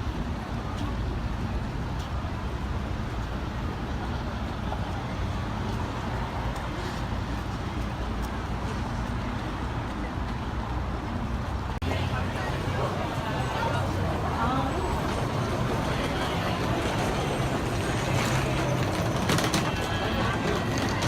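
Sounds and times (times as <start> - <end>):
road traffic rumble: 0.0 - 21.0.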